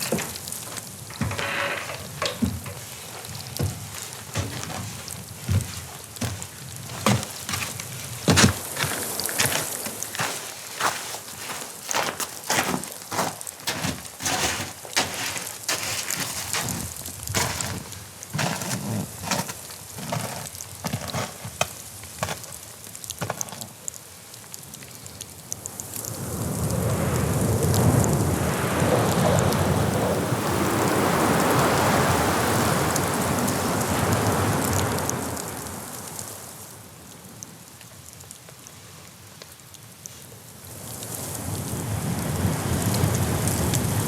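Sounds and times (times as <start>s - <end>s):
wind gust rushing: 26.1s - 34.6s.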